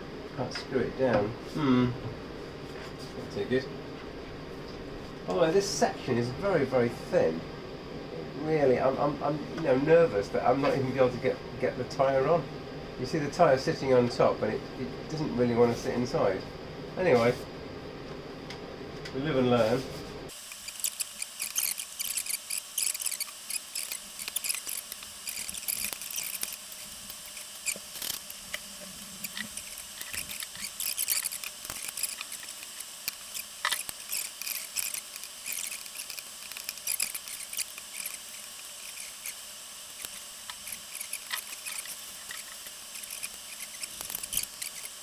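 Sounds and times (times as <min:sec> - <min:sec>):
scratching: 0:20.3 - 0:45.0
small clicks: 0:20.3 - 0:45.0
rubber squeaking on rim: 0:20.6 - 0:26.6.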